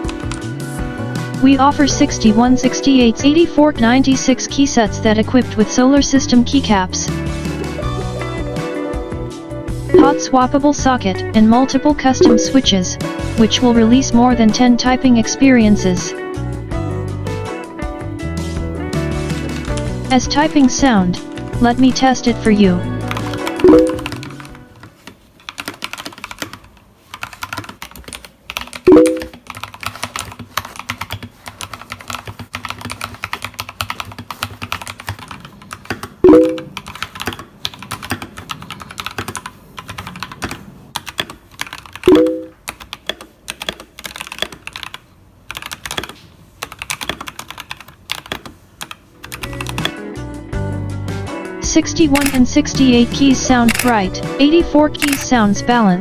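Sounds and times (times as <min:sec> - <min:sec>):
mechanical keyboard typing: 0:00.0 - 0:00.5, 0:10.0 - 0:10.4, 0:19.3 - 0:50.0, 0:51.9 - 0:54.2, 0:54.9 - 0:55.5.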